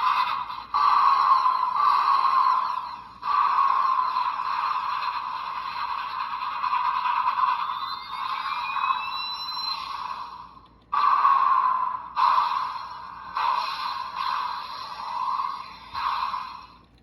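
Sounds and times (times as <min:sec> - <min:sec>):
electronic blasts: 0:00.0 - 0:16.7.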